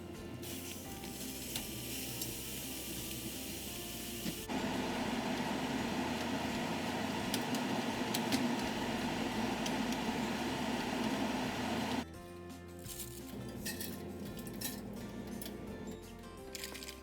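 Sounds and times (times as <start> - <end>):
appliance motor whirring: 4.2 - 12.0.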